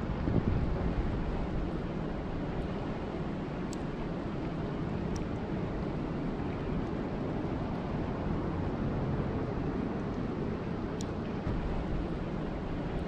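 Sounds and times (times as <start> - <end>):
steady rain falling: 0.0 - 13.0
faint drip ticks: 3.6 - 3.9, 11.0 - 11.2.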